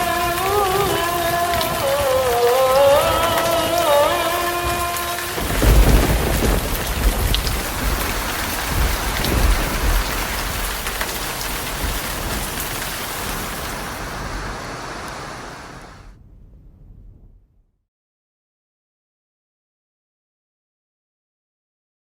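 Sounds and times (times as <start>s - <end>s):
heavy rain pouring: 0.0s - 16.2s
thunder rumbling: 0.0s - 17.7s.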